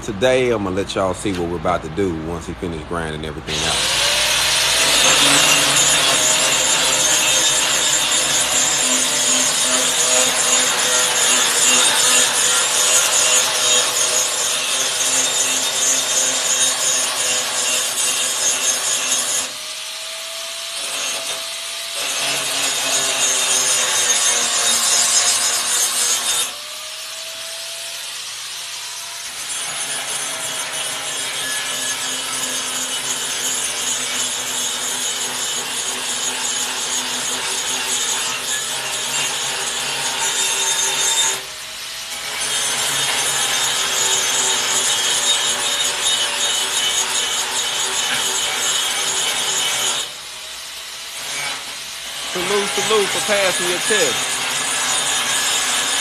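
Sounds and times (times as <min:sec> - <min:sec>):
angle grinder grinding steel: 0:02.7 - 0:56.0
grinder motor whine: 0:03.5 - 0:14.0, 0:52.2 - 0:56.0.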